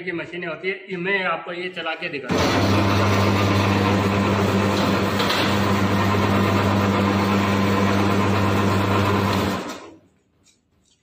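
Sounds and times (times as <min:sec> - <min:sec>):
electric motor humming: 0:02.3 - 0:09.9.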